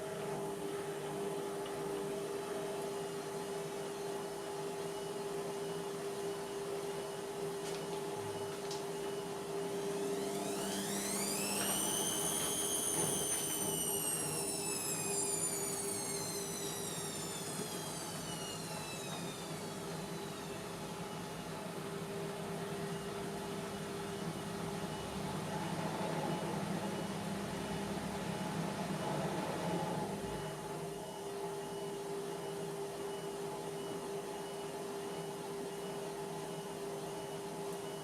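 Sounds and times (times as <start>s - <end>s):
motor whine as drum spins: 0.0s - 38.0s
washing machine humming: 0.0s - 38.0s.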